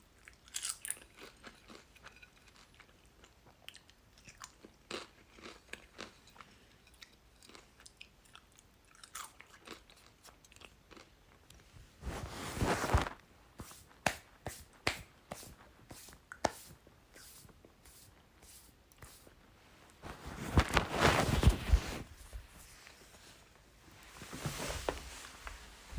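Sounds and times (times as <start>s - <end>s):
chips crunching while chewed: 0.2s - 11.5s.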